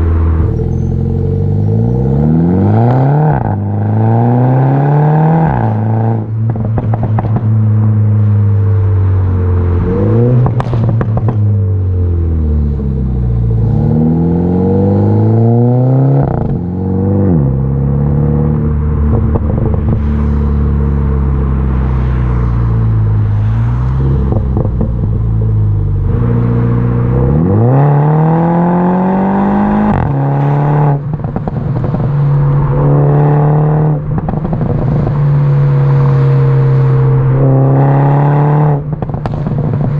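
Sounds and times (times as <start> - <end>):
car engine accelerating: 0.0 - 39.9
exhaust pops and crackles: 6.4 - 7.6, 10.4 - 11.5, 24.3 - 25.4, 38.9 - 39.9.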